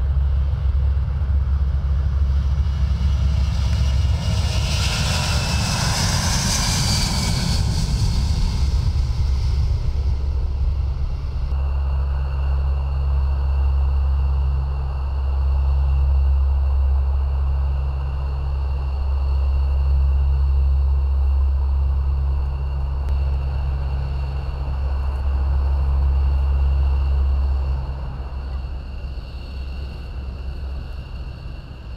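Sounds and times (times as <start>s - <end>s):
aircraft engines low rumble: 0.0s - 31.9s
high-pitched turbine whine: 0.0s - 31.9s.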